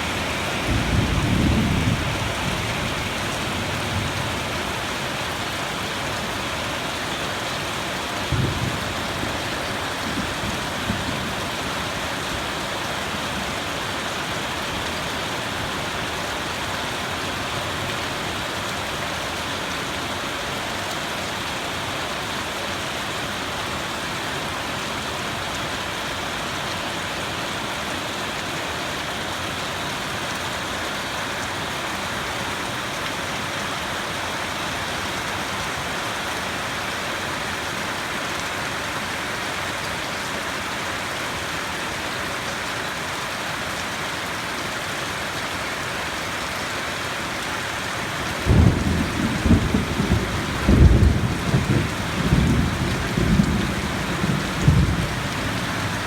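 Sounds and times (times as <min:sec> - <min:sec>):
steady rain: 0:00.0 - 0:56.0
rolling thunder rumble: 0:00.1 - 0:04.2, 0:48.5 - 0:56.0.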